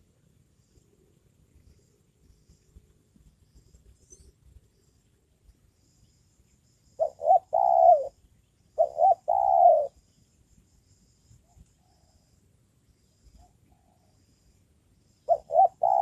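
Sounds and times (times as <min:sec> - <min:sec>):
dove cooing: 0:07.0 - 0:08.2, 0:08.8 - 0:10.0, 0:15.3 - 0:16.0.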